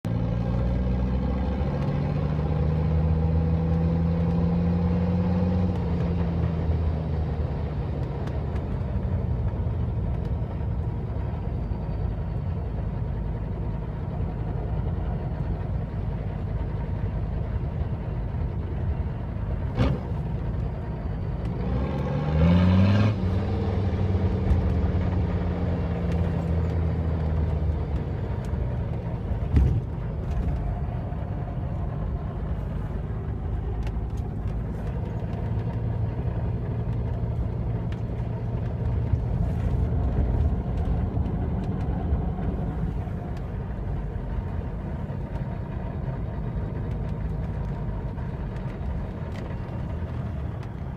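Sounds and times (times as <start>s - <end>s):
diesel engine idling and revving: 0.0s - 50.9s.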